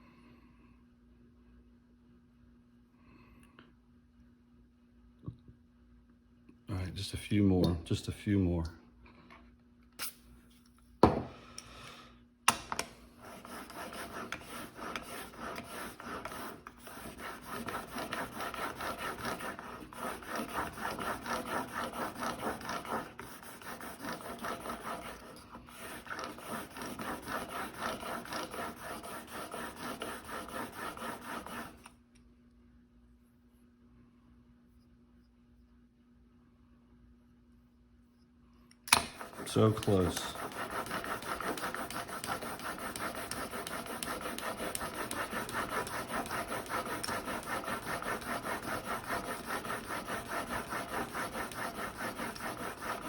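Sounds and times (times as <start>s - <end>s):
blade scraping on sandpaper: 13.2s - 31.9s, 39.1s - 53.0s.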